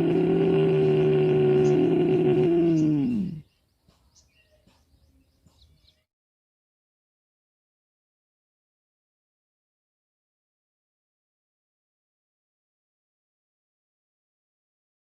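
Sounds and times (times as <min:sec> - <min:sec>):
person humming low: 0:00.0 - 0:03.4
faint bird chirps: 0:00.9 - 0:06.1.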